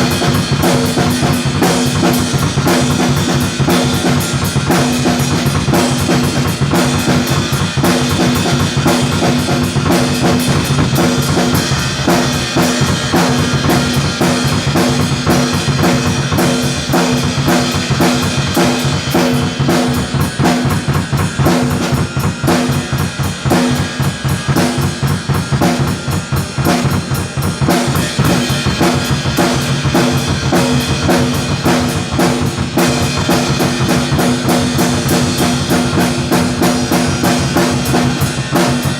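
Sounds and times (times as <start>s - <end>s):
drum kit playing fast: 0.0s - 38.9s.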